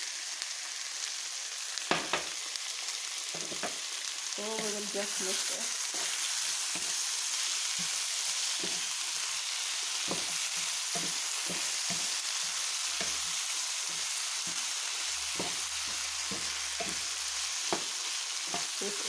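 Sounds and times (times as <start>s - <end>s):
food sizzling in a pan: 0.0s - 19.0s
utensil knocking and scraping pan: 3.4s - 3.8s, 8.6s - 9.0s, 10.0s - 18.8s.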